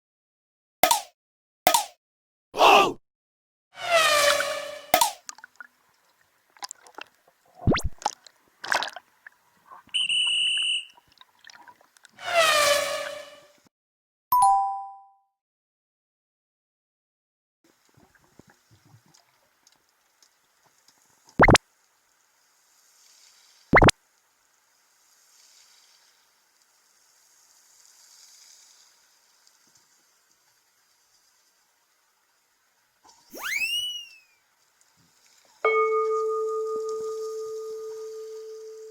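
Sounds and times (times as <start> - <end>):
watery splashes and plops: 5.0 - 12.2, 21.4 - 21.6
faint watery hiss: 17.7 - 33.4
electronic beep: 21.4 - 21.6, 33.4 - 34.2
upward swoosh: 33.3 - 34.2
ringing chime: 35.7 - 38.9.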